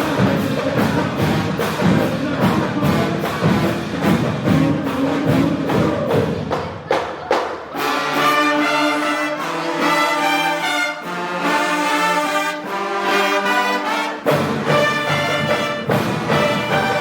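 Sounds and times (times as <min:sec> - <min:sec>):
drum-driven beat: 0:00.0 - 0:07.8, 0:14.3 - 0:17.0.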